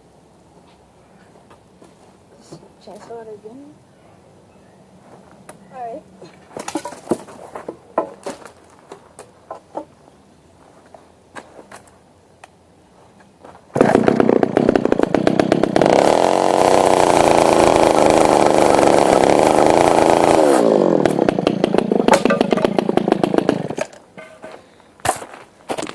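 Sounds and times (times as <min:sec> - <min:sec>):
chainsaw revving: 0:13.8 - 0:23.9.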